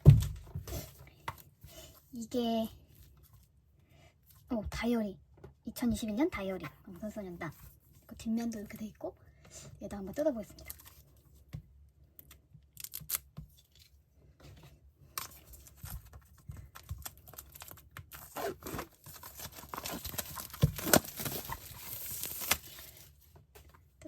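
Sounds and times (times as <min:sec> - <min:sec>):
packaging crinkling and tearing: 0:12.8 - 0:13.8, 0:15.2 - 0:23.1.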